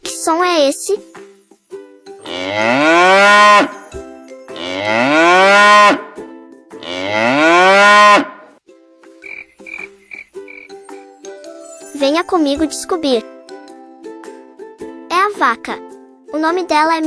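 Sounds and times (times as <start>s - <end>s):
cow mooing: 2.2s - 3.8s, 4.5s - 6.2s, 6.8s - 8.4s.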